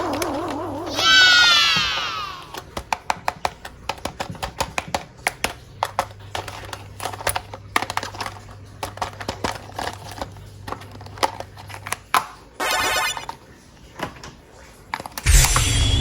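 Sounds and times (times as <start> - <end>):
toy pieces clicking: 0.0 - 1.2, 1.8 - 13.3.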